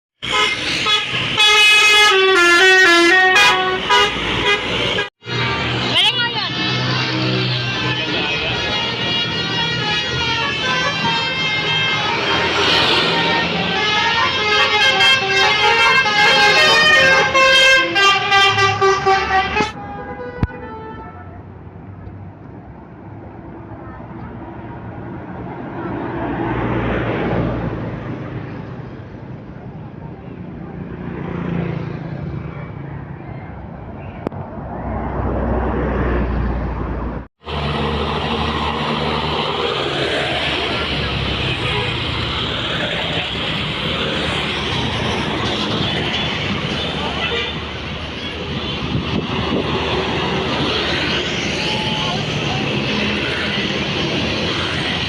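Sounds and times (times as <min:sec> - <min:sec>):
multi-tone musical bus horn: 0:00.2 - 0:21.5, 0:39.7 - 0:49.8
traffic noise: 0:00.2 - 0:55.0.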